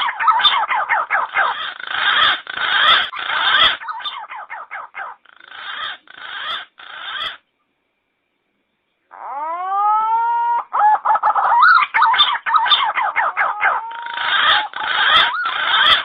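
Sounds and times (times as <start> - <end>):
whistled pigeon calls: 10.4 - 16.0.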